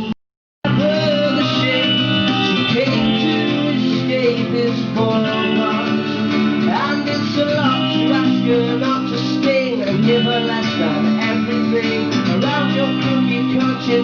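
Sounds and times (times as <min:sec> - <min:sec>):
live band with strummed guitars: 0:00.0 - 0:14.0.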